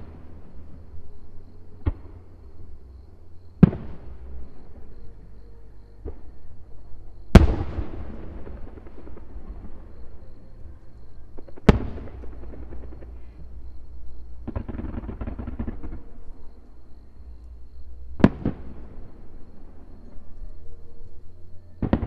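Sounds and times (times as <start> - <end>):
firework booms with rolling echo: 1.8 - 2.8, 3.5 - 4.8, 7.2 - 10.3, 11.2 - 17.0, 17.8 - 20.2, 21.8 - 22.0.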